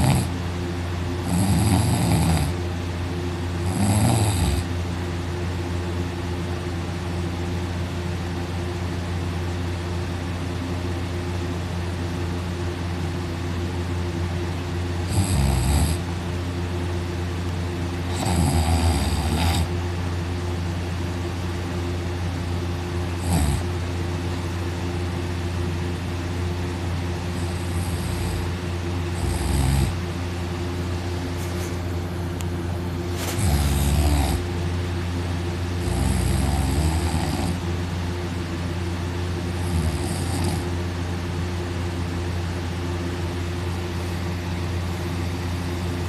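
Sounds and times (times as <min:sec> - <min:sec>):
man snoring heavily: 0:00.0 - 0:00.4, 0:01.2 - 0:02.6, 0:03.6 - 0:04.7, 0:15.0 - 0:16.1, 0:18.1 - 0:19.7, 0:23.2 - 0:23.7, 0:27.4 - 0:30.0, 0:33.1 - 0:34.5, 0:35.8 - 0:37.6, 0:39.5 - 0:40.7
steady low hum: 0:00.0 - 0:46.0.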